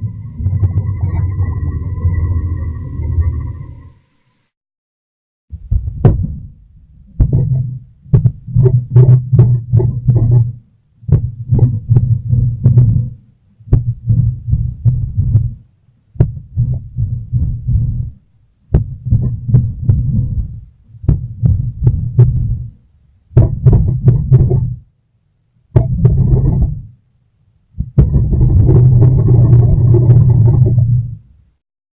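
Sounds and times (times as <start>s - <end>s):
deep pulsing booms: 0.0s - 3.8s, 27.8s - 31.2s.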